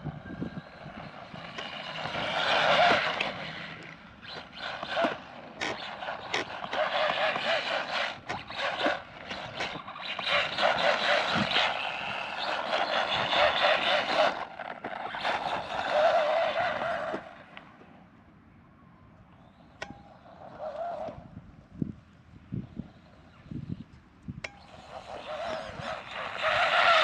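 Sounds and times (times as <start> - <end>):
toy truck electric motor whining: 0.0 - 17.9, 19.4 - 21.3, 24.5 - 27.0
tyres scrabbling on dirt: 1.4 - 17.3, 24.8 - 27.0.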